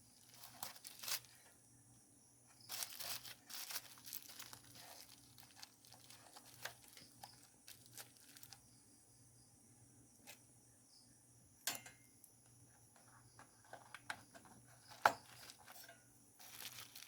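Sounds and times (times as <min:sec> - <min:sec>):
computer parts rustling: 0:00.0 - 0:01.6, 0:02.6 - 0:08.6, 0:13.0 - 0:17.0.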